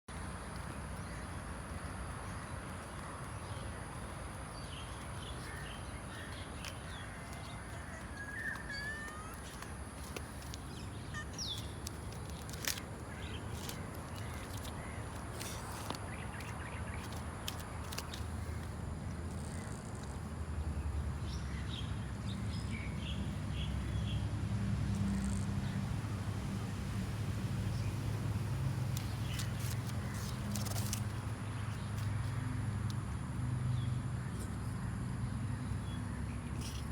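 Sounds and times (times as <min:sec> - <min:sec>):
birds calling: 0:02.3 - 0:18.7.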